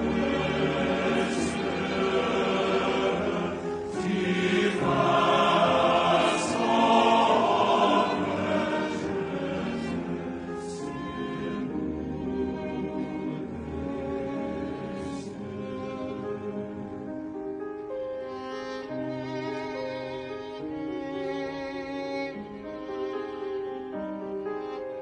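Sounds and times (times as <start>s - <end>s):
men's chorus singing: 0.0s - 17.1s.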